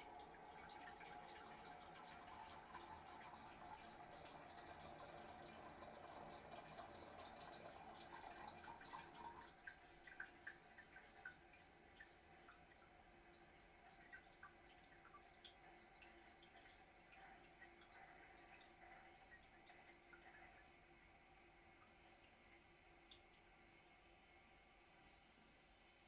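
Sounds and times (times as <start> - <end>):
toilet refilling: 0.0 - 11.4
water drips and trickles: 0.0 - 24.2.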